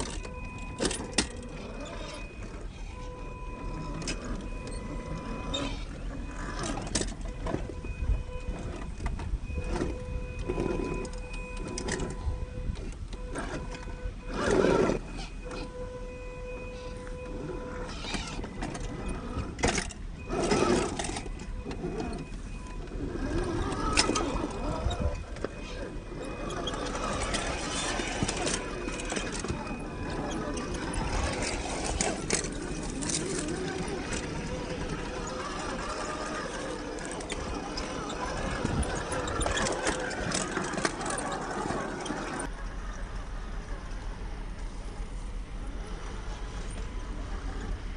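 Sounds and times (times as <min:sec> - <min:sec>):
electric motor and gears whining: 0:00.0 - 0:47.9
rough scraping and crunching: 0:16.8 - 0:42.5.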